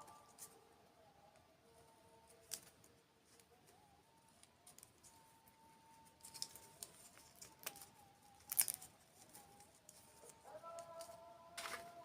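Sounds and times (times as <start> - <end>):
faint high tone: 0.0 - 2.8, 3.4 - 12.0
crisp chewing crunches: 6.2 - 9.6.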